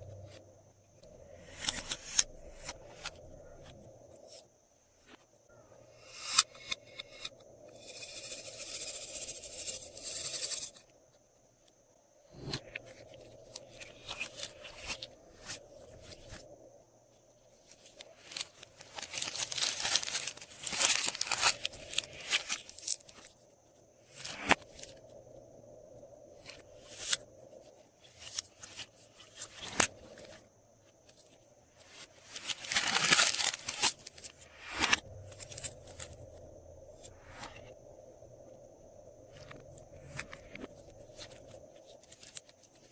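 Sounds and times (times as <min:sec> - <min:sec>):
plastic bags crinkling: 0:18.2 - 0:23.0, 0:32.4 - 0:34.2.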